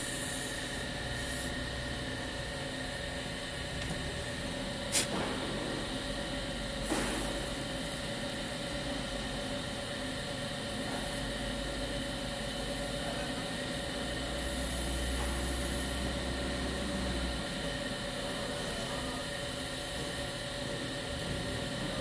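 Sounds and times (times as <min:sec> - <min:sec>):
hiss: 0:00.0 - 0:01.5, 0:04.9 - 0:05.2
steady mechanical hum: 0:00.0 - 0:22.0.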